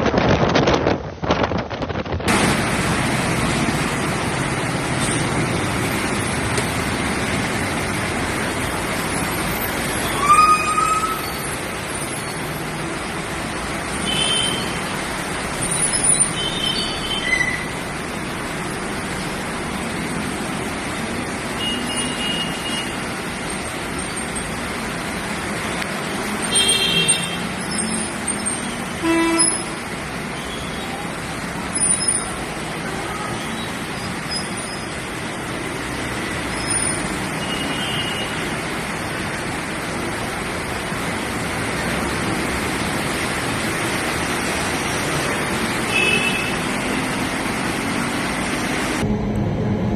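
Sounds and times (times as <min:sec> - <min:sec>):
street traffic rush: 0:00.0 - 0:49.9
vehicle horn toots: 0:29.0 - 0:29.7.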